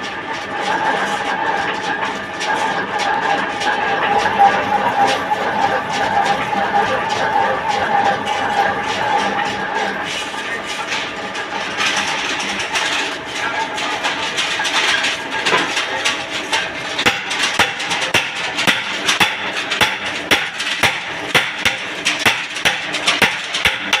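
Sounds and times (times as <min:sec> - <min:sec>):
lathe humming: 0:02.1 - 0:15.4
sharp metal knocks: 0:17.0 - 0:24.0.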